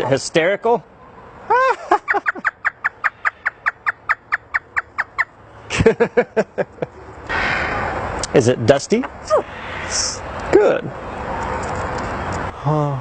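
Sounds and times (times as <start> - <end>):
parrot imitating human laugh: 1.5 - 2.8.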